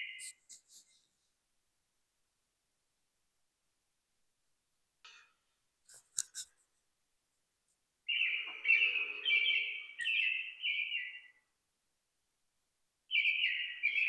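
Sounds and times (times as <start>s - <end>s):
bird singing warbling song: 8.1s - 11.5s, 13.1s - 14.0s.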